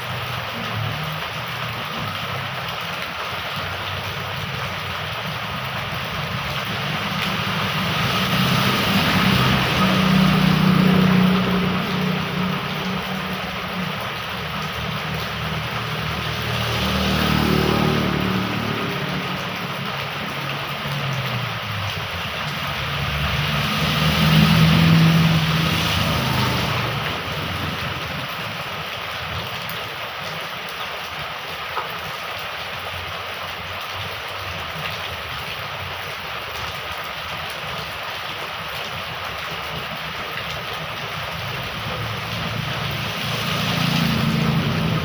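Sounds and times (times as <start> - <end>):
heavy rain pouring: 0.0 - 45.0
vehicle engine passing by: 4.9 - 28.8, 40.5 - 45.0.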